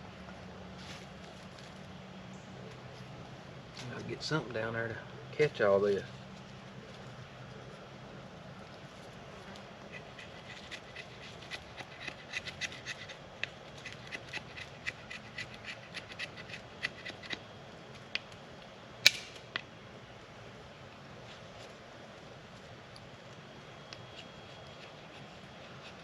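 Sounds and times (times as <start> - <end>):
knife scraping wood: 9.9 - 17.4, 24.0 - 26.0
sharp snap: 19.0 - 19.6.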